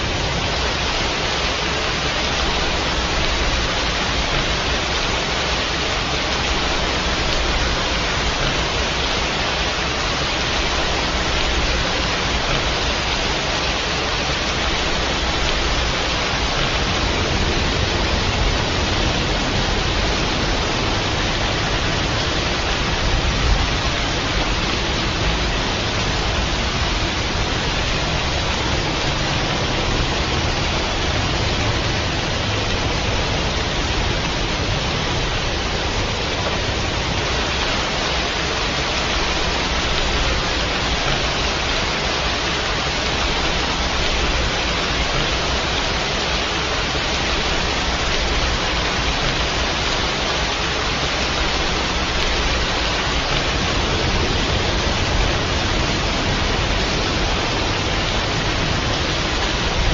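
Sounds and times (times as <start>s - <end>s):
dense rainfall: 0.0s - 59.9s.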